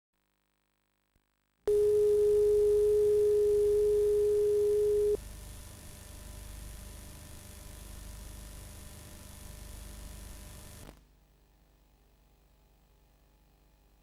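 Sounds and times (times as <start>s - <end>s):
low hum: 1.7s - 5.2s
faint tape hiss: 1.7s - 5.3s.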